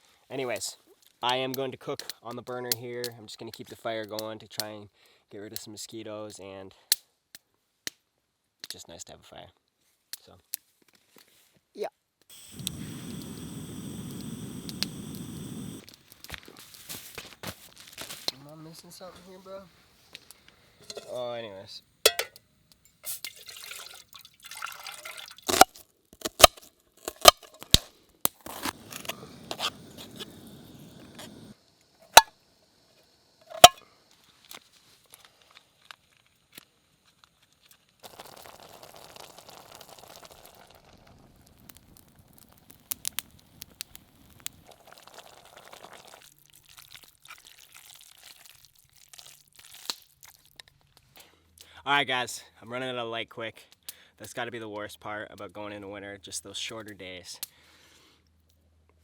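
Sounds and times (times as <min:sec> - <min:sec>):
plastic packet crinkling and tearing: 0:16.0 - 0:18.5, 0:37.7 - 0:51.0.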